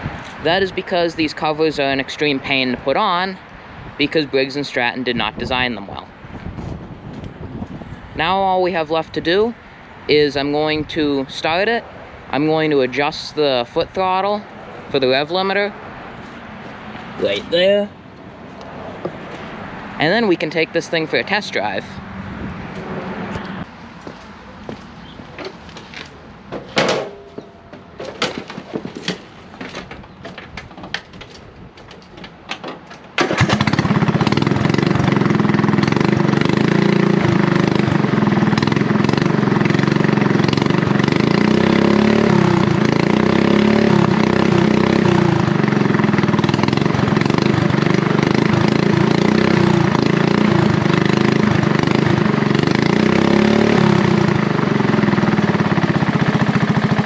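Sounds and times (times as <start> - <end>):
lawn tractor engine running: 26.6 - 31.3, 31.9 - 57.0.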